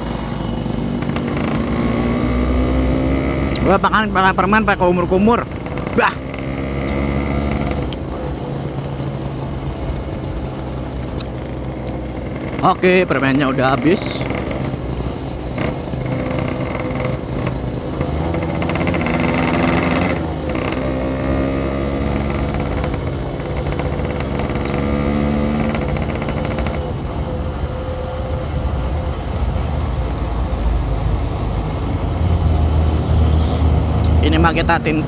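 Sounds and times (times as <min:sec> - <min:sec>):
two-stroke motorcycle engine accelerating: 0:00.0 - 0:35.0.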